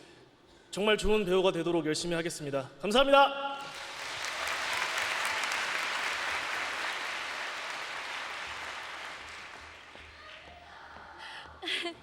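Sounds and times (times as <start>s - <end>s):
audience applauding: 3.6s - 10.5s.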